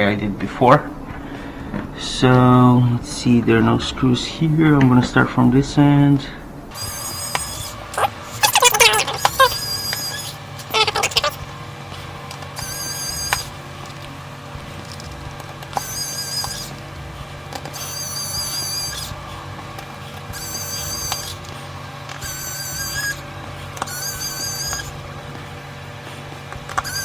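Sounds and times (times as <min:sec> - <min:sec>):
electric screwdriver whining: 0:06.7 - 0:27.0.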